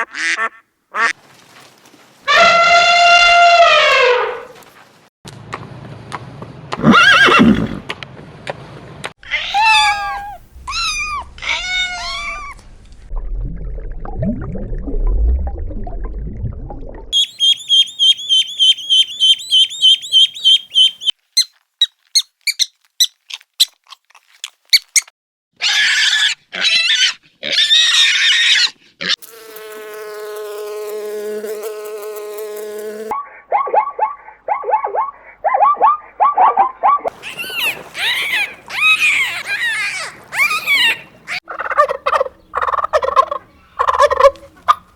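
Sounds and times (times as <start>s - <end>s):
rising and falling animal cries: 9.2s - 12.6s, 17.2s - 21.1s, 25.6s - 29.2s, 33.5s - 42.3s
harsh animal calls: 9.3s - 12.4s, 17.2s - 21.1s, 37.1s - 44.7s
long steady pitched call: 9.5s - 10.9s, 17.2s - 21.1s
high chirps: 17.2s - 21.1s.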